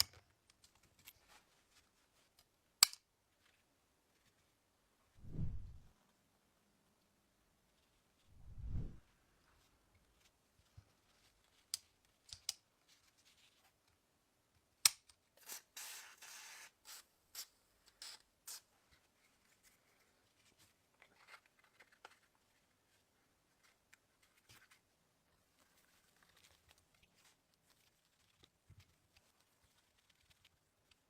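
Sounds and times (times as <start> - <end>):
sharp clicks of small parts: 2.8 - 3.0, 11.7 - 12.6, 14.8 - 15.2.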